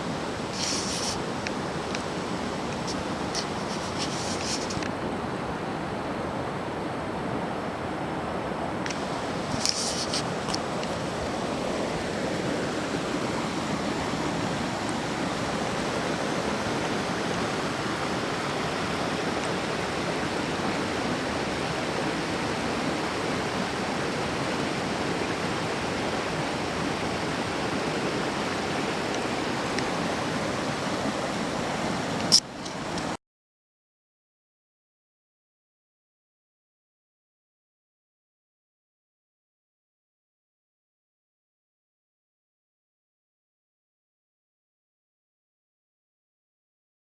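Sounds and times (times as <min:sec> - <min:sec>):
stream flowing over rocks: 0:00.0 - 0:33.2.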